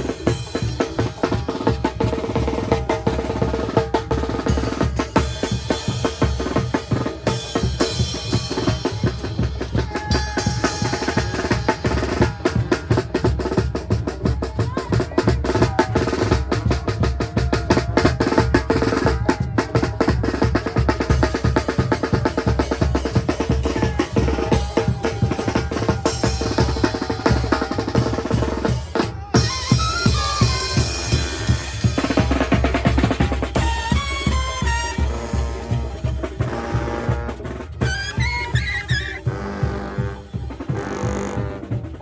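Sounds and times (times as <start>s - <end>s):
brass band playing: 0.0s - 42.0s
fast bass drum and snare: 0.0s - 42.0s
horn melodic lines: 22.7s - 42.0s.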